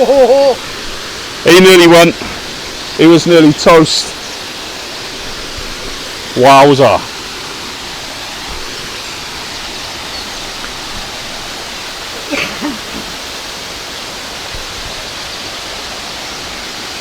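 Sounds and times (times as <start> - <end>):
person speaking: 0.0 - 0.7, 6.4 - 7.1
waterfall rushing: 0.0 - 17.0.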